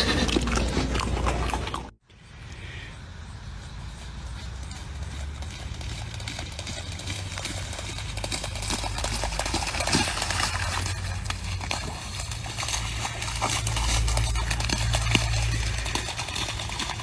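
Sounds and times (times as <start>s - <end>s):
steady low rumble: 0.0s - 17.0s.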